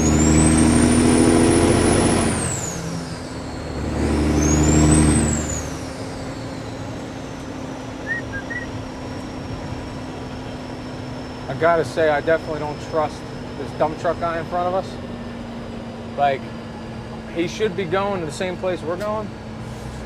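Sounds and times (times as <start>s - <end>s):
diesel truck engine: 0.0s - 20.0s
high whistle: 8.0s - 8.8s.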